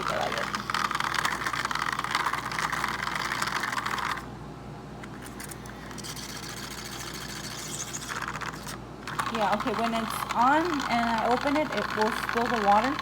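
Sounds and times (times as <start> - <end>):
small motor rattling whir: 0.0 - 4.3, 5.4 - 13.0
soft hissing whir: 5.0 - 13.0.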